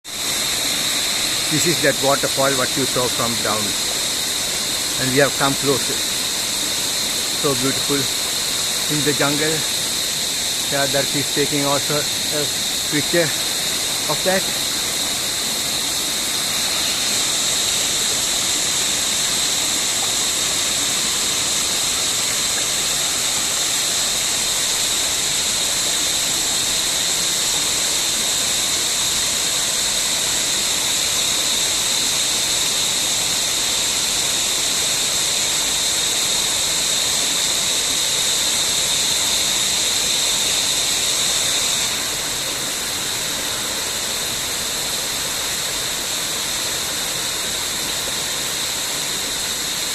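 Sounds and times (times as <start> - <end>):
high steady whine: 0.1 - 27.2
waterfall rushing: 0.1 - 33.0, 38.2 - 49.9.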